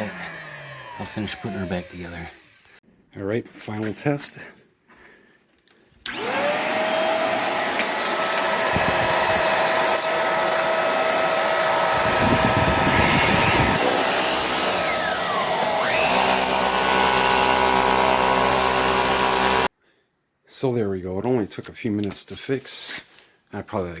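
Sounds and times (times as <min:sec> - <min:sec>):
vacuum cleaner motor whine: 0:00.0 - 0:02.7, 0:06.1 - 0:19.7.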